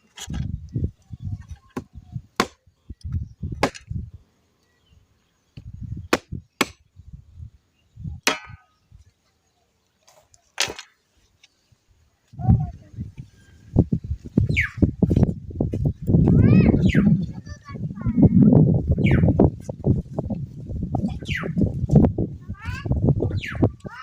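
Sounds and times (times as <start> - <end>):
sharp knocks: 8.3 - 8.7.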